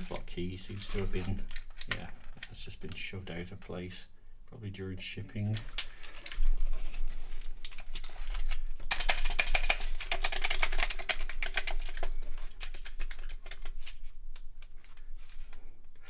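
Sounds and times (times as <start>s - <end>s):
keyboard keys clicking: 8.9s - 13.7s.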